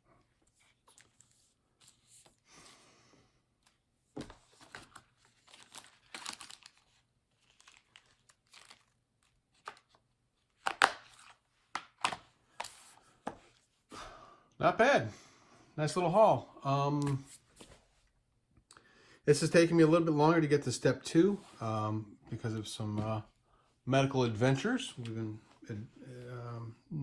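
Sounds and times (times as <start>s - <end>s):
packaging crinkling and rustling: 4.3s - 11.4s
packaging tearing: 5.2s - 10.0s.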